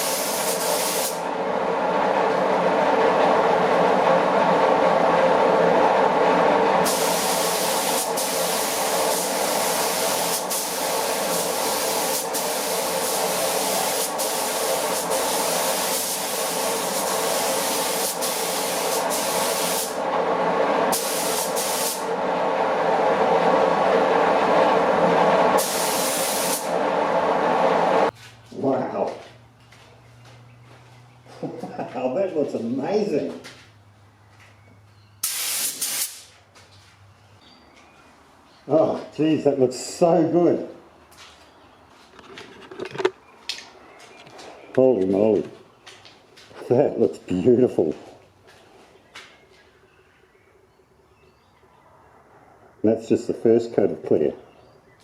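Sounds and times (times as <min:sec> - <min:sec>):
spray gun hissing: 0:00.0 - 0:01.3, 0:06.8 - 0:20.0, 0:20.8 - 0:22.2, 0:22.8 - 0:28.1, 0:35.2 - 0:36.3
steady machine drone: 0:00.0 - 0:28.1.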